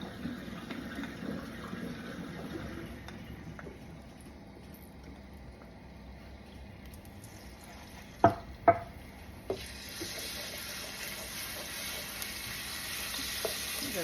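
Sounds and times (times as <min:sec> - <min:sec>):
paste sizzling in hot oil: 0:09.1 - 0:14.0.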